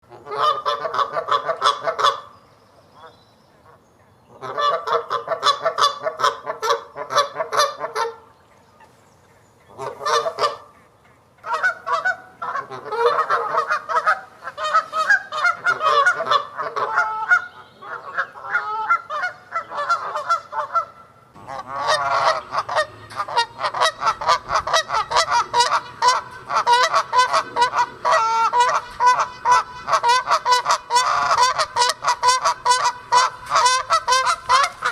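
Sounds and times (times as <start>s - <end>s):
geese honking: 0.0s - 2.3s, 3.0s - 9.0s, 9.6s - 34.9s.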